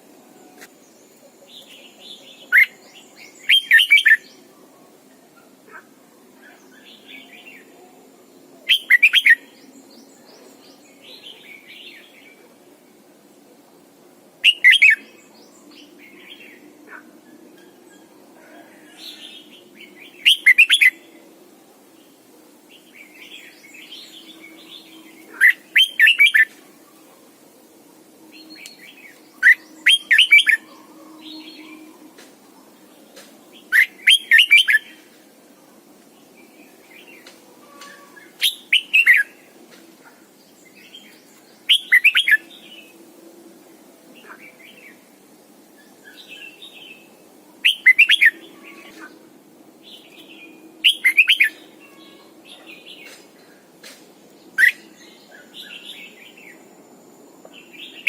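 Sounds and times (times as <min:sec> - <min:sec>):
bird singing warbled phrases: 0:01.1 - 0:04.5, 0:08.6 - 0:12.4, 0:14.4 - 0:17.0, 0:18.9 - 0:21.0, 0:22.8 - 0:26.6, 0:28.4 - 0:31.9, 0:33.6 - 0:35.1, 0:36.4 - 0:39.4, 0:40.7 - 0:42.9, 0:45.9 - 0:49.2, 0:49.8 - 0:53.2, 0:54.4 - 0:56.6.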